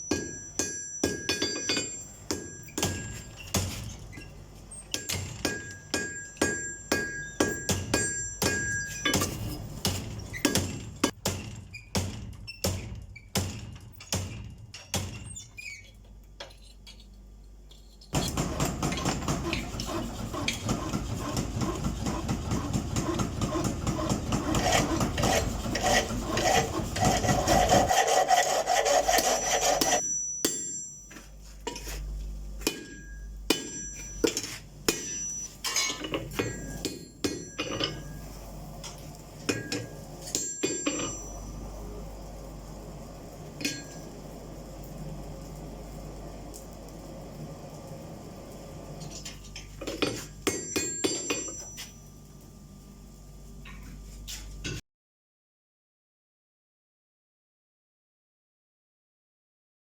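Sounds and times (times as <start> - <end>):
rough scraping: 24.4 - 30.0.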